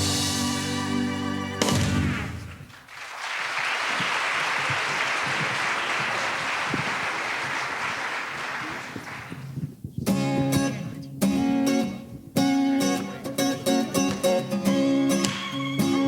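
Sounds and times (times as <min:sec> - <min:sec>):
audience applauding: 0:01.8 - 0:09.6
guitar strumming chords: 0:10.1 - 0:16.0.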